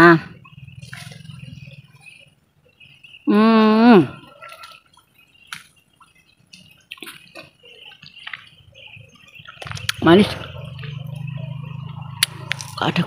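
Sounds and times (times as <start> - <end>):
wet mouth clicks eating: 6.5 - 8.5, 9.4 - 10.0.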